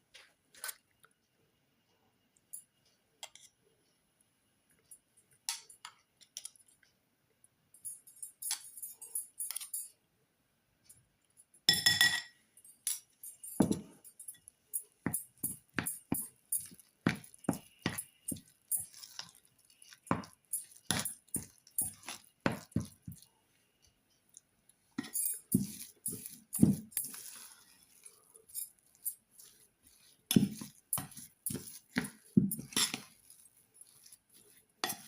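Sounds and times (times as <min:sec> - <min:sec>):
utensils clinking against a vessel: 0:25.0 - 0:27.2.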